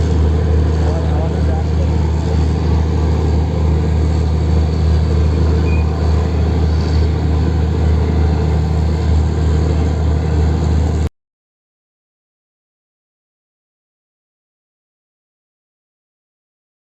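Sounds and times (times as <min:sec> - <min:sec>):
diesel engine low drone: 0:00.0 - 0:11.1.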